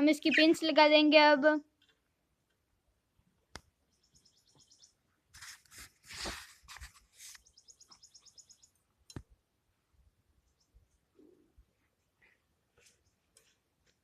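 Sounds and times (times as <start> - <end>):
bird chirping in trills: 0.2 - 0.7, 3.8 - 5.0, 7.3 - 8.8
rustling: 5.3 - 7.5.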